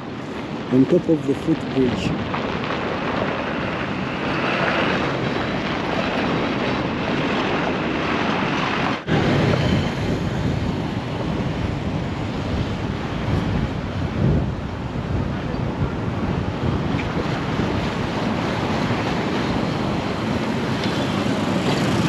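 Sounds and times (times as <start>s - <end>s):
wind buffeting microphone: 0.0s - 22.0s
road traffic: 7.6s - 22.0s.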